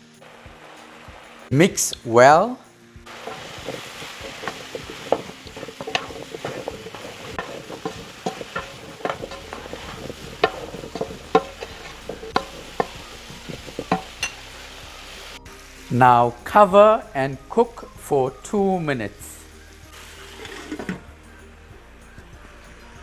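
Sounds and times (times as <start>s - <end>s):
oil sizzling: 0.0s - 22.2s
spoon knocking and scraping pan: 3.1s - 14.5s, 20.4s - 21.0s.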